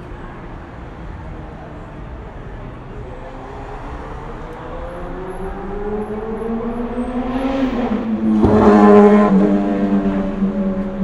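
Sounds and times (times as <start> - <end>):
vehicle engine accelerating: 3.4 - 11.0.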